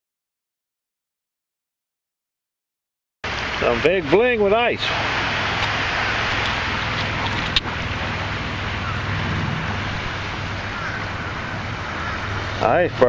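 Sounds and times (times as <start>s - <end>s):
shallow surf: 3.2s - 13.0s
wind: 3.2s - 13.0s
low rumble: 4.9s - 12.5s.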